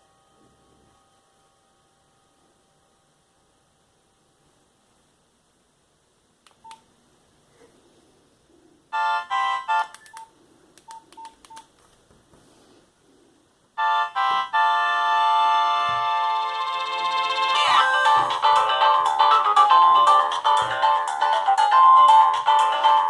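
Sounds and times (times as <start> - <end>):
phone ringtone melody: 8.9 - 10.1, 13.8 - 23.0
keypad beeps: 9.7 - 11.7.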